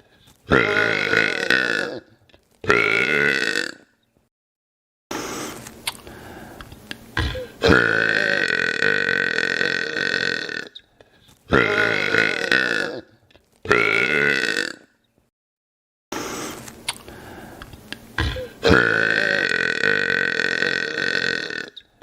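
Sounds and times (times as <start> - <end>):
man burping loudly: 0.5 - 3.9, 7.2 - 10.8, 11.5 - 14.9, 18.2 - 21.9.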